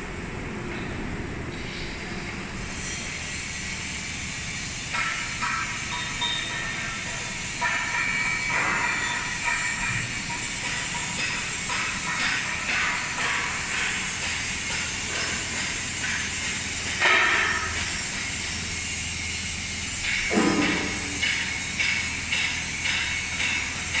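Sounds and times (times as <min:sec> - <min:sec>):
industrial machinery humming: 0:00.0 - 0:24.0
hiss: 0:01.5 - 0:24.0.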